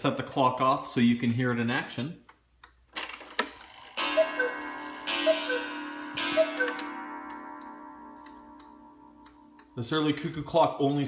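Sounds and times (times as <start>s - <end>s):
two-note cuckoo call: 4.0s - 7.4s
clock gong strikes: 4.0s - 9.8s.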